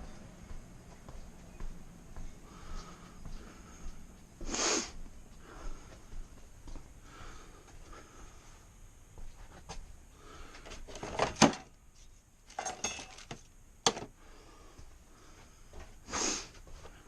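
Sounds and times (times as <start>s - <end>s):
tools knocking and clicking: 12.5s - 14.1s.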